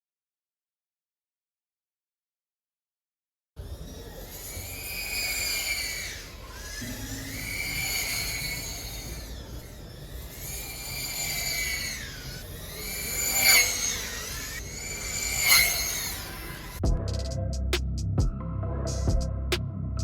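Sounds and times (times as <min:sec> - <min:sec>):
drone motors whining: 0:03.6 - 0:16.9.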